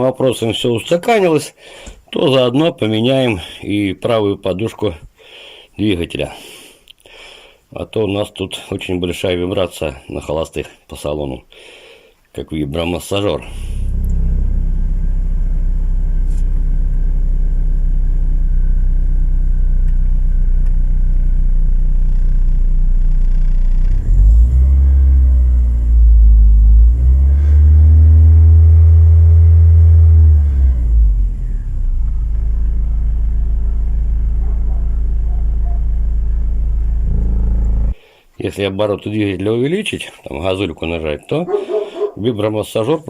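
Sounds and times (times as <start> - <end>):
car engine idling and revving: 13.5 - 38.0.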